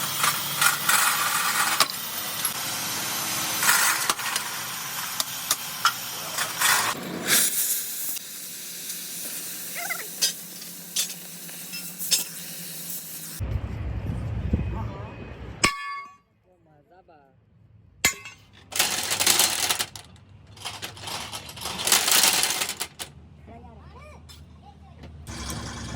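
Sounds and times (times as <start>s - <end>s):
sizzling hiss with sharp crackles: 2.1s - 13.4s.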